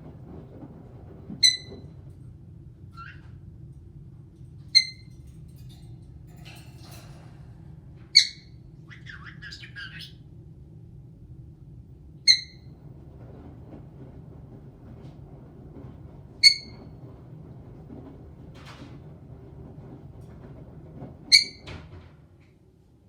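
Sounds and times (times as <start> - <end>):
parrot sharp high calls: 8.2 - 10.2
parrot soft chattering: 8.2 - 10.2.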